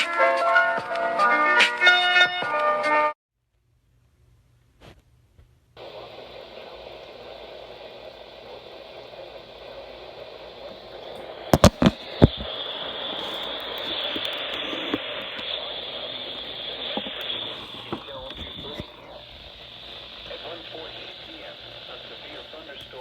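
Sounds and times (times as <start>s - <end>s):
radio static hiss: 5.8s - 23.0s.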